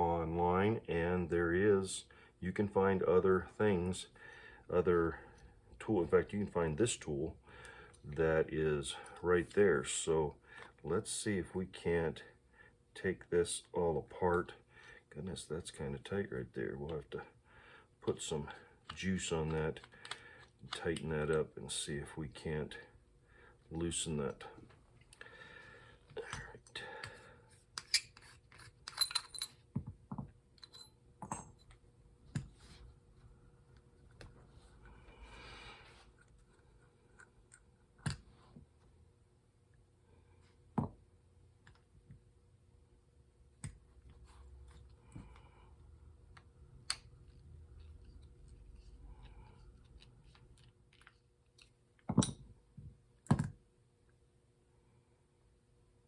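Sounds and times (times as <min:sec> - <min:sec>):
metal tools clinking: 0:28.8 - 0:29.6, 0:30.6 - 0:31.8.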